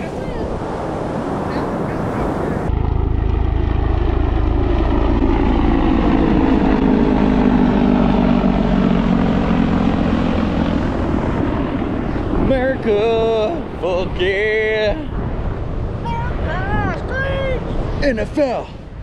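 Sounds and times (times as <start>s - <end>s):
low-flying aircraft engine drone: 0.0s - 19.0s.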